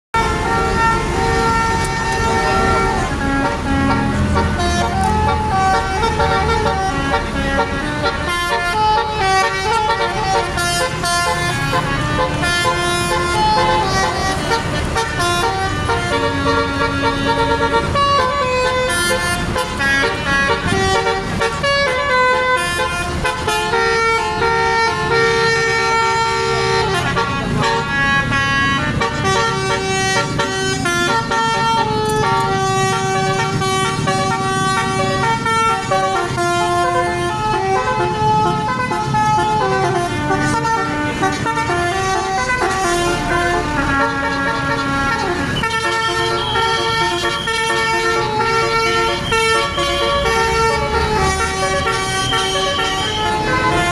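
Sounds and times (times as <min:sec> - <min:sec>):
engine and road noise: 0:00.0 - 0:53.9
bus multi-tone horn tune: 0:00.1 - 0:53.9.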